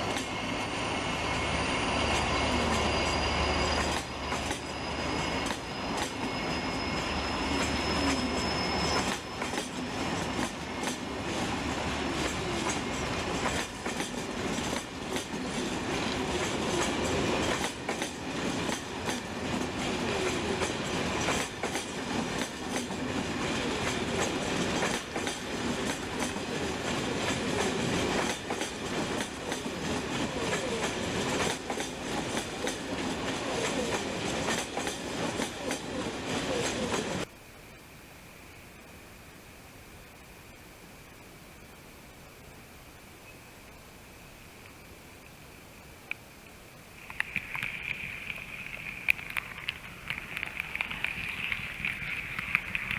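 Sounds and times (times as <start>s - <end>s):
train wheels clicking over rail joints: 0.0s - 0.6s, 2.1s - 6.6s, 7.4s - 37.3s
thin high whine: 0.0s - 22.1s
train wheel squeal: 0.0s - 37.3s.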